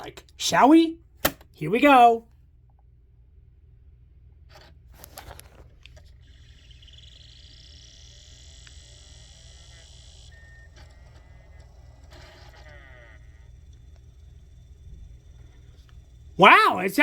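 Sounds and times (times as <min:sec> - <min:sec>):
disc drive spinning whine: 0:04.5 - 0:17.0
low hum: 0:05.1 - 0:17.0.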